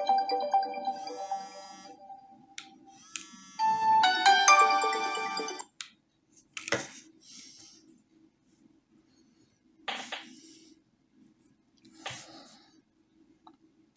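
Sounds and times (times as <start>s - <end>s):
tablet ringtone chiming melody: 0.0s - 2.4s, 3.6s - 5.6s.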